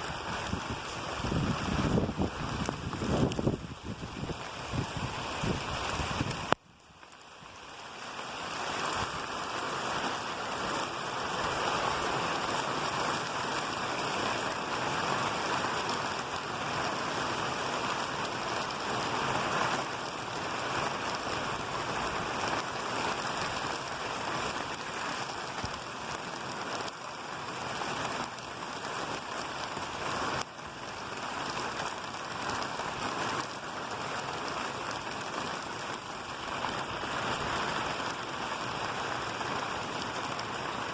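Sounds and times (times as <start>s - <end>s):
steady rain falling: 0.0s - 40.9s.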